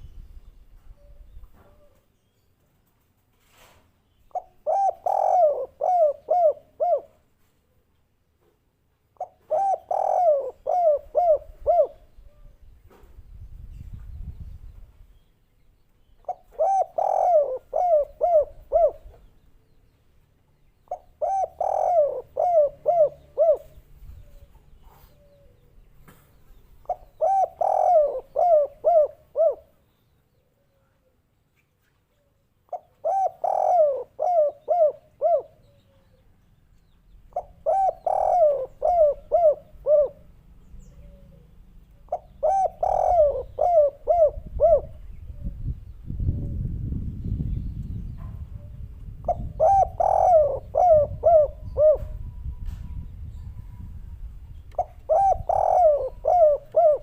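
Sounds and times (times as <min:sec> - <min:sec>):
dove cooing: 0:04.3 - 0:07.2, 0:09.2 - 0:12.6, 0:16.2 - 0:19.3, 0:20.9 - 0:25.8, 0:26.8 - 0:29.8, 0:32.7 - 0:36.2, 0:37.3 - 0:45.7, 0:48.5 - 0:53.9, 0:54.7 - 0:57.0.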